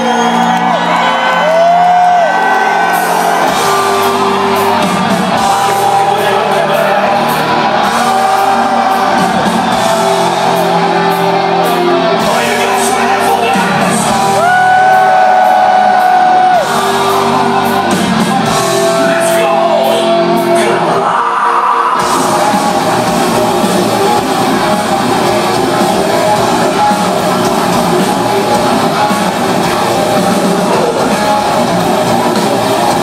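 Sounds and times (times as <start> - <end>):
metal band playing live: 0.0 - 33.0
person singing: 11.6 - 17.7.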